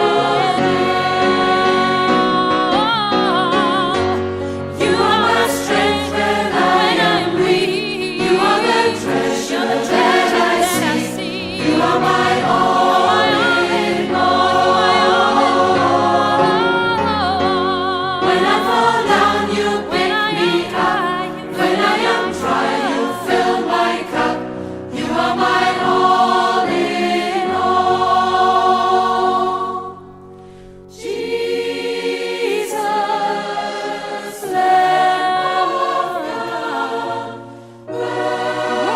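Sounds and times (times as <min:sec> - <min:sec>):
choir singing gospel song: 0:00.0 - 0:38.9.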